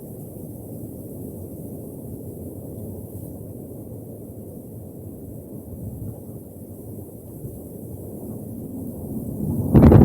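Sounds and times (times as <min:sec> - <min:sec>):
strong wind gusts: 0:08.9 - 0:10.0.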